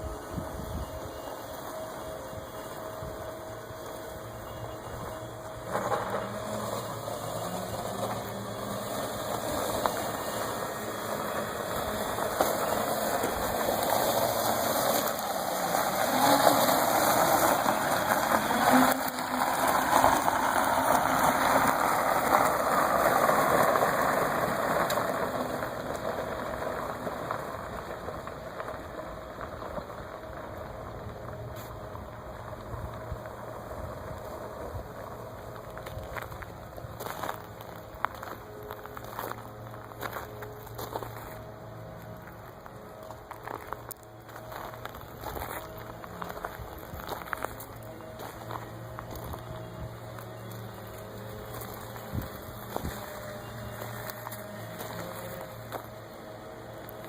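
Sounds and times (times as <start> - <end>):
electric car motor: 0.0 - 57.0.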